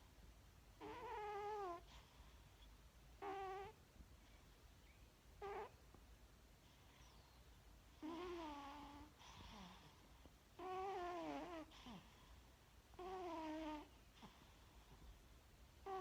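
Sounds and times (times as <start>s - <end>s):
cat snoring with squeaks: 0.8s - 2.3s, 3.2s - 3.8s, 5.4s - 5.8s, 6.6s - 7.4s, 8.0s - 10.0s, 10.6s - 12.3s, 13.0s - 14.6s.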